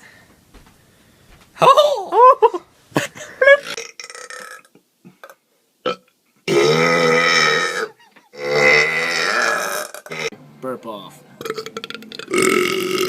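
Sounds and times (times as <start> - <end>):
long loud belch: 3.6 - 4.7, 5.8 - 10.3, 11.4 - 13.0.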